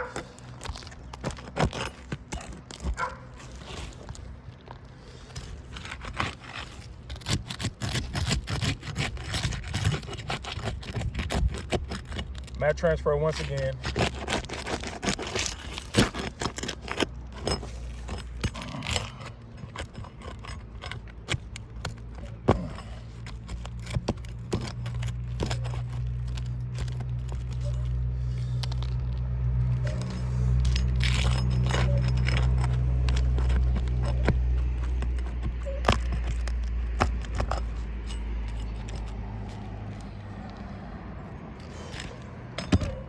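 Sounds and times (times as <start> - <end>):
clicks and taps of shingles: 0.0 - 12.7, 13.3 - 40.7.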